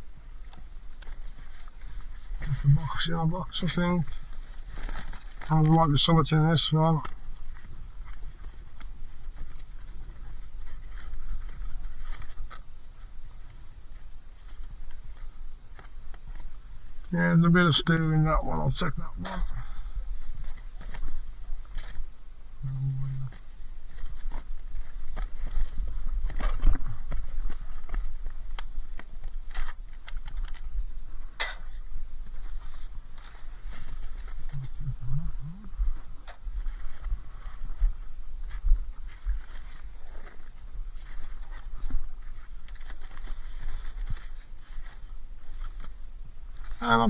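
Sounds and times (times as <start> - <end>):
low steady rumble: 0.0 - 47.0
rummaging through cardboard box: 38.4 - 45.9.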